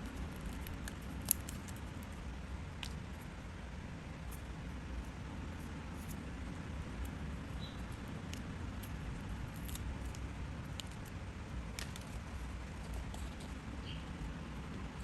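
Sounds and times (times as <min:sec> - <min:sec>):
paper and tools clicking: 0:00.0 - 0:01.9
low background hum: 0:00.0 - 0:15.0.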